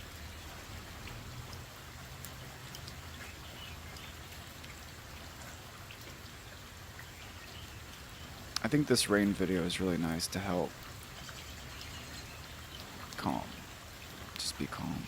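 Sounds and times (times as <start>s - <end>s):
rain drops splashing into puddle: 0.0s - 15.0s.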